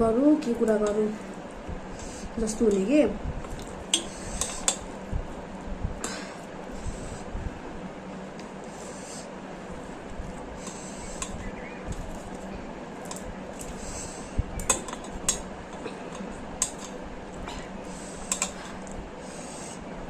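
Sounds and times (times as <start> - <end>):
soft eating sounds: 8.2 - 19.8
chopsticks clicking against bowl: 14.6 - 17.0, 18.3 - 19.0.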